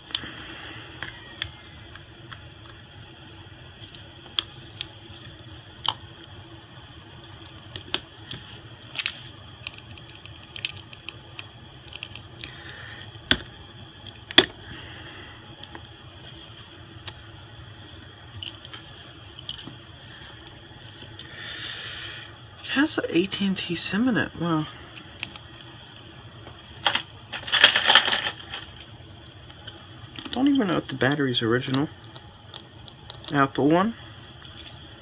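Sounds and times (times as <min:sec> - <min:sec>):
steady background hiss: 0:00.0 - 0:35.0.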